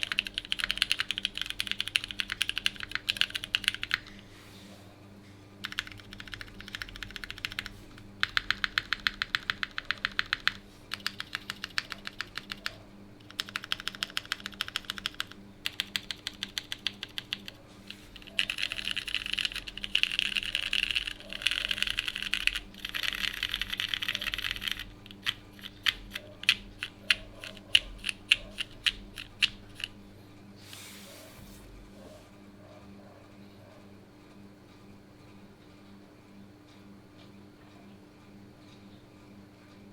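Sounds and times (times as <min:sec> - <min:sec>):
mechanical keyboard typing: 0:00.0 - 0:04.1, 0:05.6 - 0:30.0.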